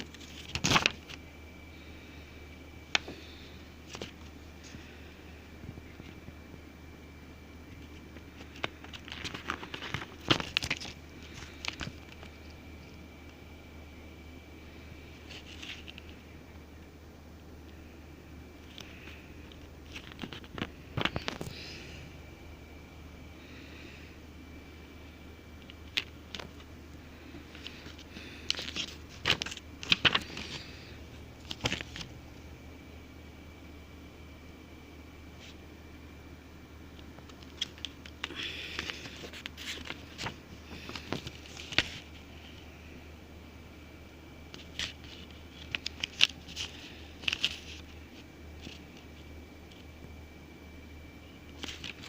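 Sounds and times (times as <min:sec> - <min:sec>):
packaging clicks and rustles: 0:00.0 - 0:01.2, 0:07.7 - 0:13.4, 0:18.6 - 0:21.8, 0:25.6 - 0:32.1, 0:37.0 - 0:42.7, 0:44.5 - 0:50.0, 0:51.5 - 0:52.0.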